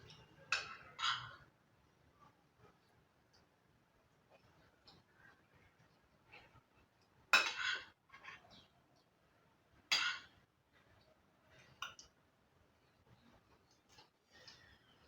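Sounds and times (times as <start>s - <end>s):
cutlery scraping a plate: 0.6s - 1.4s, 7.4s - 8.6s.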